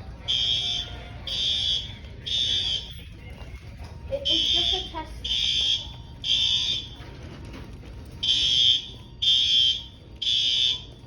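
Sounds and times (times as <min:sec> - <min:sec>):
fire alarm horn blasts: 0:00.2 - 0:03.1, 0:04.2 - 0:07.1, 0:08.2 - 0:11.0.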